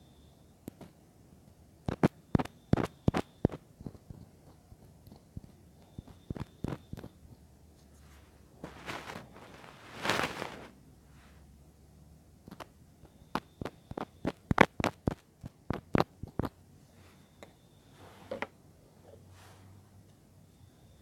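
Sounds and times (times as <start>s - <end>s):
sharp taps: 1.9s - 7.2s.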